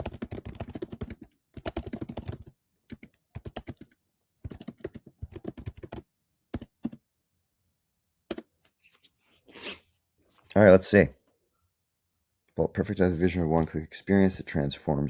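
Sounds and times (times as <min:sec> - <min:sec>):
computer keyboard typing: 0:00.0 - 0:07.0.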